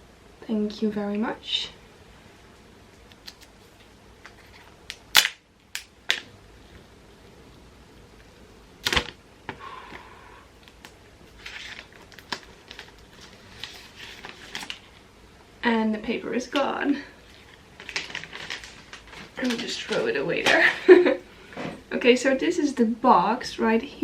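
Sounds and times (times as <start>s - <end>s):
paper seal strip crinkling: 10.6s - 15.0s, 17.2s - 20.2s.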